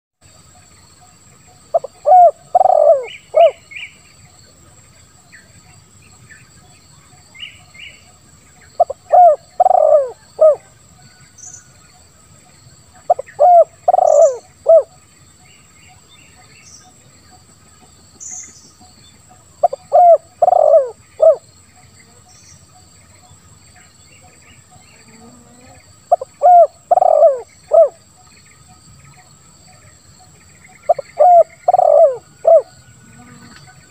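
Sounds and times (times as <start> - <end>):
faint bird chirps: 0.3 - 33.9
dove cooing: 1.7 - 3.7, 8.8 - 10.8, 13.1 - 15.0, 19.6 - 21.4, 25.0 - 28.0, 30.9 - 33.9.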